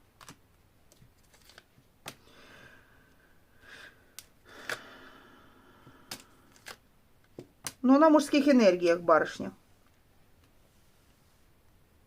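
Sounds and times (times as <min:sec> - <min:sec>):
cards clicking and snapping: 0:00.1 - 0:02.3, 0:04.2 - 0:04.9, 0:05.8 - 0:07.8
soft card rustling: 0:00.2 - 0:02.2, 0:06.0 - 0:07.5.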